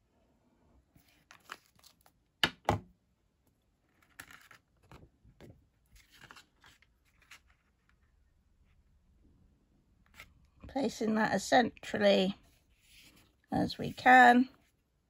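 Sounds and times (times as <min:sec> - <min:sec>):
paper rustling and scraping: 0:04.0 - 0:05.0, 0:05.9 - 0:08.0, 0:12.6 - 0:14.0.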